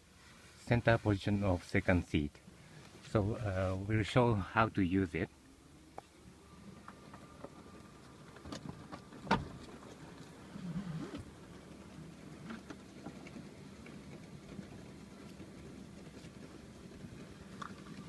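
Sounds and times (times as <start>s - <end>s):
seat belt rubbing: 8.4s - 11.4s.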